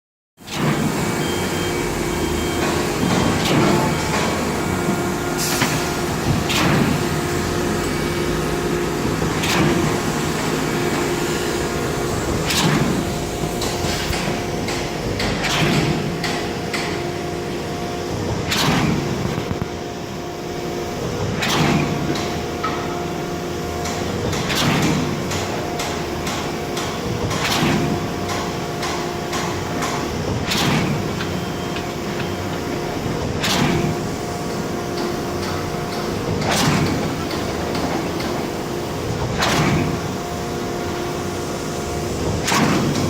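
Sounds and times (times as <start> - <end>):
concrete pump engine hum: 0.4 - 43.0
pump surge: 0.5 - 16.3.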